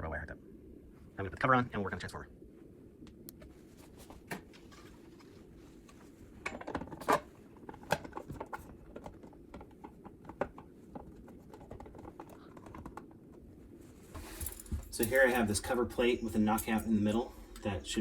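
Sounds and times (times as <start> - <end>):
faint low hum: 0.0 - 18.0
plastic cover clicks and knocks: 6.5 - 13.1.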